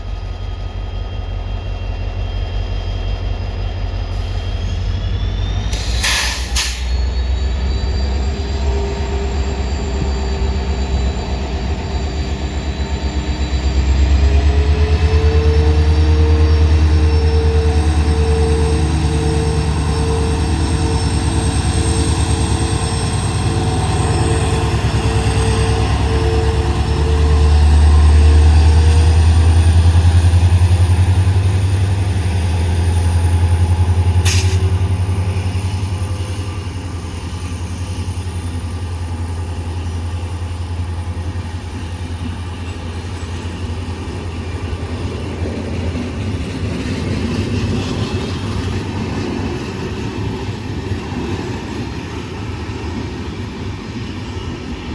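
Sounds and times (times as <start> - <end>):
diesel locomotive engine humming: 0.0 - 54.9
sharp click: 34.3 - 34.7.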